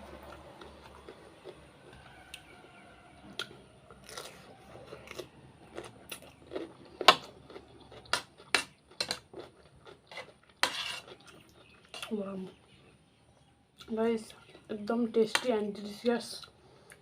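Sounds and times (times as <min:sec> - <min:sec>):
person chewing with mouth smacks: 0:00.2 - 0:12.7.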